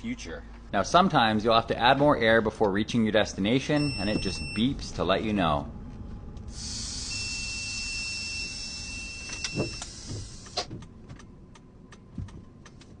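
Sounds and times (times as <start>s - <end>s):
breathalyzer beep: 3.8s - 4.8s, 6.8s - 10.0s.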